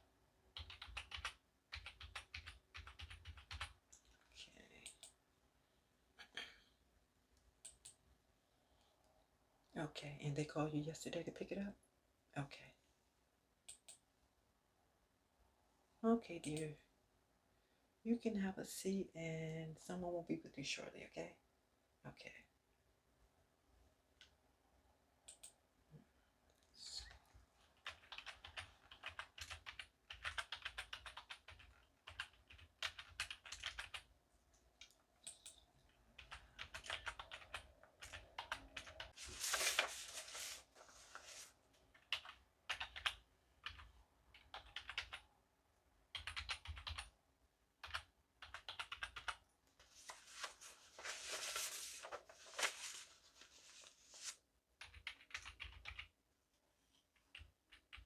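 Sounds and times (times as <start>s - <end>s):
typing on computer keyboard: 0.5s - 4.1s, 27.8s - 34.1s, 36.2s - 39.2s, 41.9s - 45.2s, 46.1s - 47.1s, 47.8s - 49.5s, 54.8s - 56.1s, 57.2s - 58.0s.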